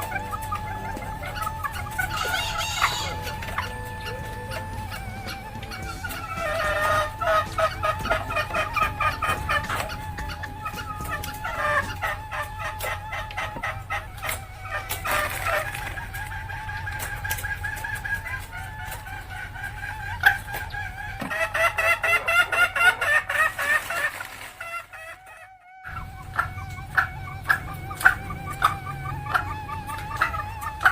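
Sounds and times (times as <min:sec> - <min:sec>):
hen cackling: 0:00.0 - 0:30.9.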